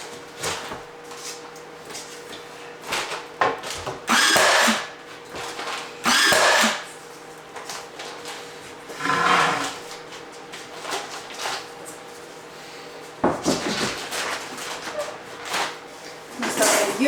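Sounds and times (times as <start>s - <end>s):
power drill bursts: 4.1s - 5.0s, 6.0s - 6.9s.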